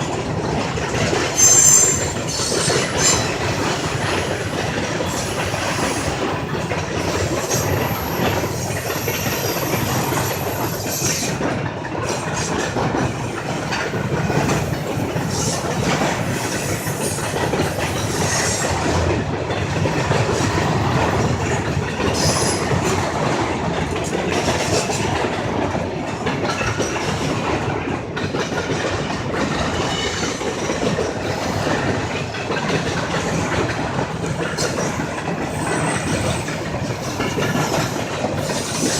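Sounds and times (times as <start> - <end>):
train cars rumbling: 0.0 - 38.9
wheels clicking over rail joints: 0.0 - 38.9
high wheel squeal: 1.4 - 3.2.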